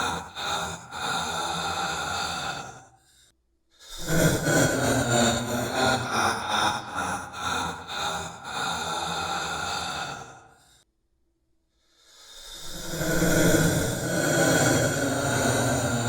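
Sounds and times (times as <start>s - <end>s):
evil laugh with effects: 4.5s - 8.2s.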